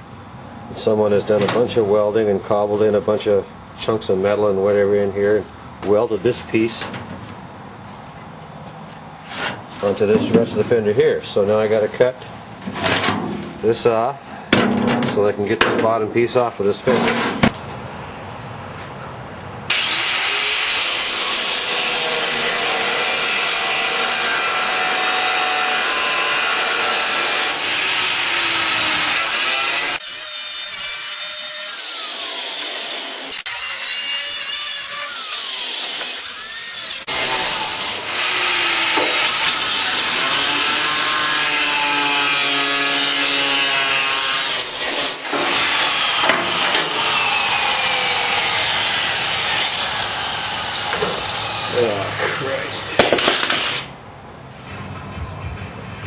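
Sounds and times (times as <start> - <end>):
power tool cutting metal: 19.7 - 53.9.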